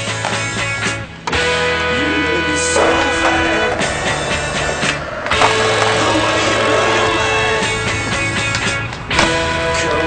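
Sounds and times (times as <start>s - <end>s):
rock soundtrack music: 0.0s - 9.9s
electric guitar chord ringing: 1.4s - 8.5s.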